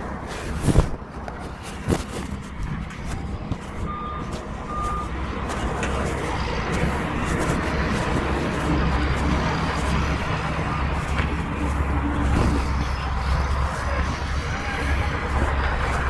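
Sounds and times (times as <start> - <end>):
diesel engine running: 0.0 - 16.0
backup alarm beeping: 3.8 - 5.6.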